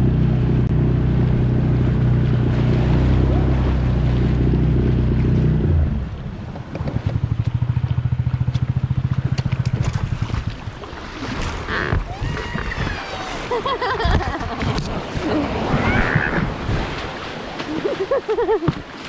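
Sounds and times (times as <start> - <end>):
outboard motor puttering: 0.0 - 17.0.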